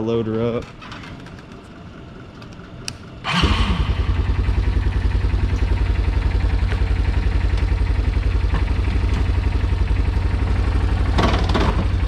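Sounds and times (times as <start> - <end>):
quad bike engine idling: 3.2 - 12.0.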